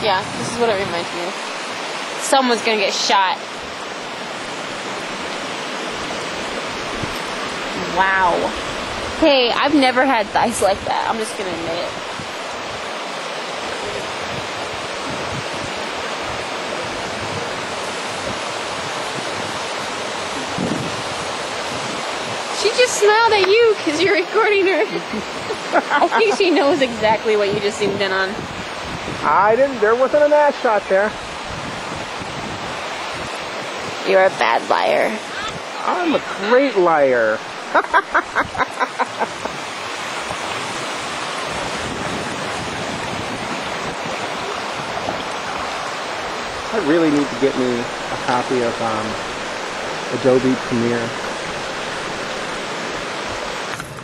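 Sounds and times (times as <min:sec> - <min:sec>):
wind buffeting microphone: 0:00.0 - 0:54.0.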